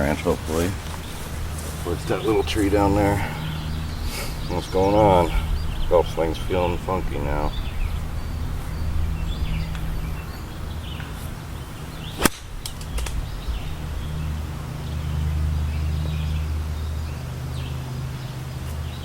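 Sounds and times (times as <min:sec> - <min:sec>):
wind rumbling on microphone: 0:03.5 - 0:16.8
golf club striking ball: 0:12.1 - 0:13.4.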